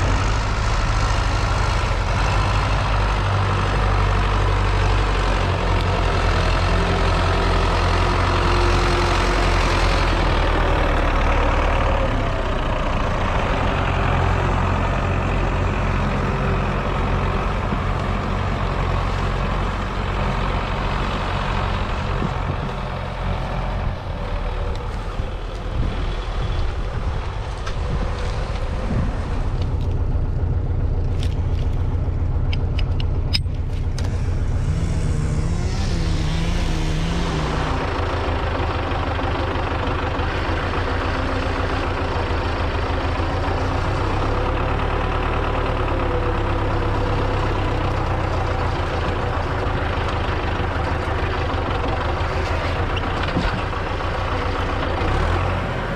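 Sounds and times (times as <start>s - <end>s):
tractor diesel engine running: 0.0s - 55.9s
sharp clicks: 32.4s - 34.2s.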